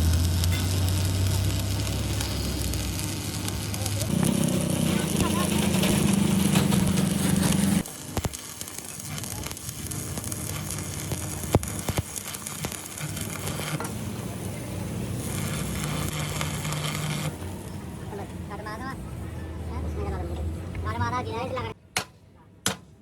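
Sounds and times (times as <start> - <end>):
loud machine hum: 0.0 - 18.0.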